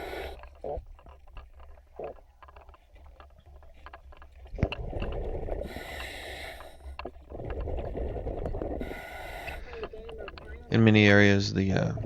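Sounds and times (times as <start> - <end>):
faint clicking: 0.0 - 11.0
exhaled bubbles rushing: 7.2 - 9.7.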